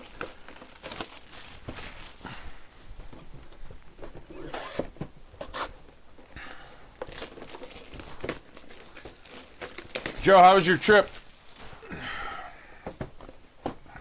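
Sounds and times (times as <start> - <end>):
plastic shrink-wrap tearing and crinkling: 0.0 - 2.2, 7.0 - 11.8.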